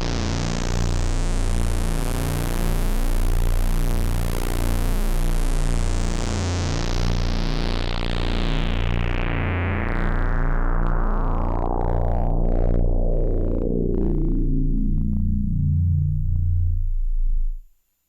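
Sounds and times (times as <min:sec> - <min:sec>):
synthesizer sustained low note: 0:10.0 - 0:17.7.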